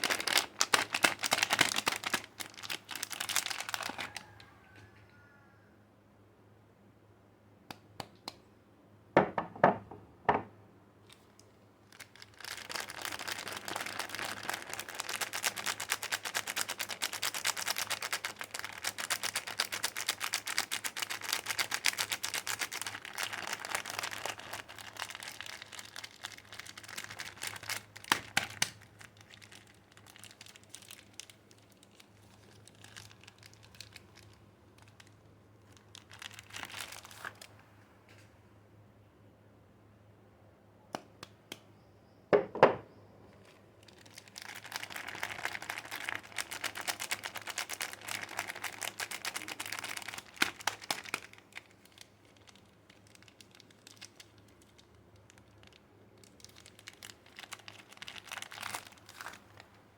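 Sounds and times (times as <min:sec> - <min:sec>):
wrapper crinkling and tearing: 0:00.0 - 0:04.5, 0:11.1 - 0:37.6, 0:43.4 - 0:59.9.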